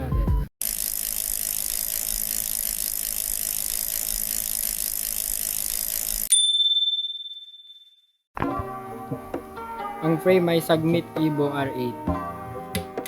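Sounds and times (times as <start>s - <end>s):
bicycle freewheel ratchet clicking: 0.6s - 6.3s
bicycle bell ring: 6.3s - 8.1s.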